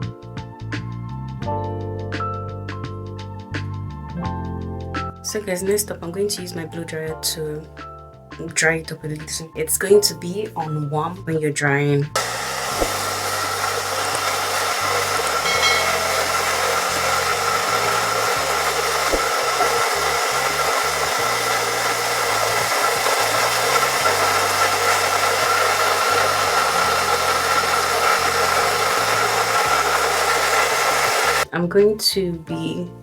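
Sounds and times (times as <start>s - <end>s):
blow dryer running: 12.2s - 31.5s.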